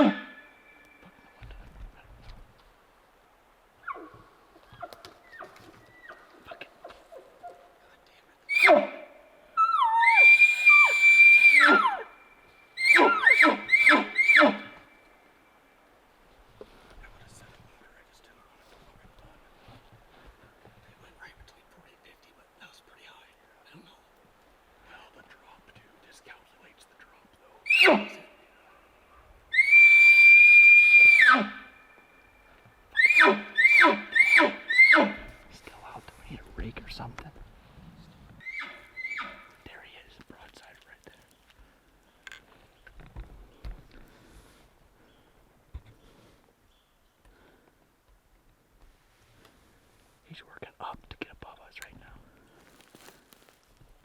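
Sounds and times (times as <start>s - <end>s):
elk bugling: 8.5s - 12.2s, 12.8s - 14.9s, 27.6s - 28.8s, 32.9s - 35.4s, 38.4s - 39.6s.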